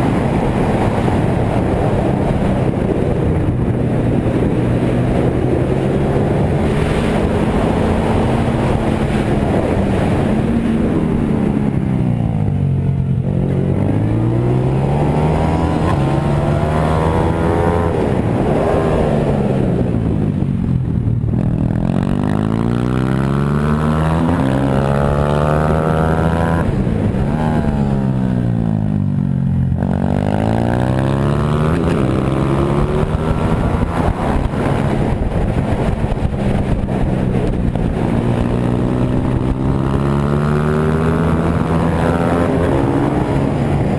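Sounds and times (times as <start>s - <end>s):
pit bike engine accelerating: 21.3s - 43.9s.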